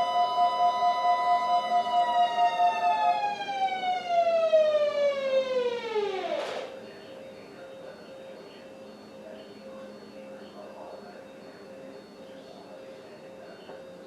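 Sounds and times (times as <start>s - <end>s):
loud siren-like tone: 0.0s - 6.8s.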